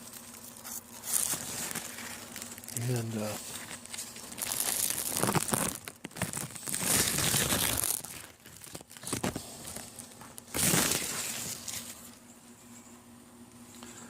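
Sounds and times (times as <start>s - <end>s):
plant leaves rustling: 0.0s - 12.2s.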